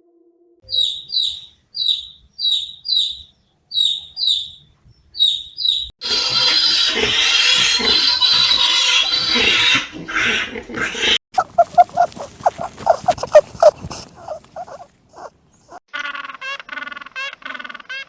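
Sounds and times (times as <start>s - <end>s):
pigs grunting: 6.0s - 15.8s
pigs squealing: 6.0s - 16.3s.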